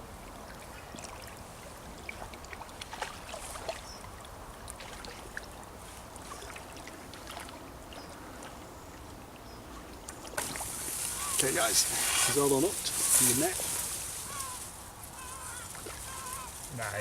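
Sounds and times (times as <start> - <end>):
river water running: 0.0 - 17.0
splashes of wading: 0.4 - 16.8.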